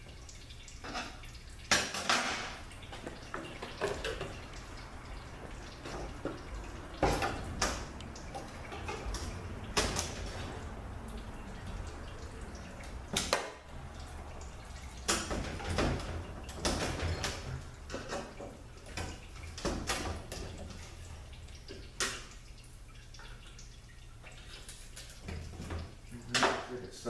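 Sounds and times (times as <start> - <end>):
low steady hum: 0.0 - 27.0.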